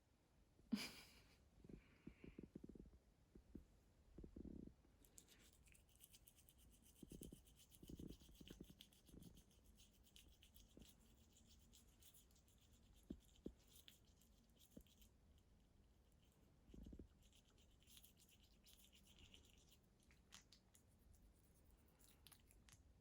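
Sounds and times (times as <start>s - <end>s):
toothbrush scrubbing teeth: 5.1s - 15.4s, 16.1s - 22.9s.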